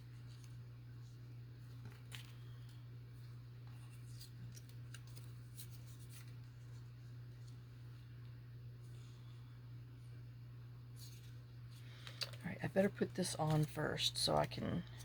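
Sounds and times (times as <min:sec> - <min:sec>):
steady low hum: 0:00.0 - 0:15.0
paper rustling and clicking: 0:01.6 - 0:06.8, 0:11.0 - 0:15.0.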